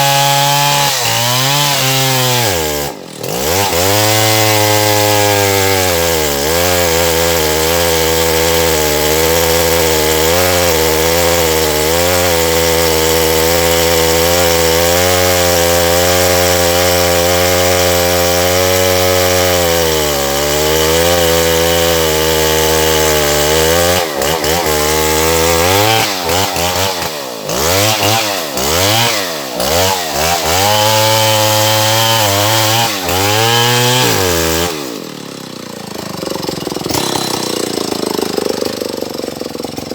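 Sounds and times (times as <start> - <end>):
chainsaw sawing through wood: 0.0 - 39.9.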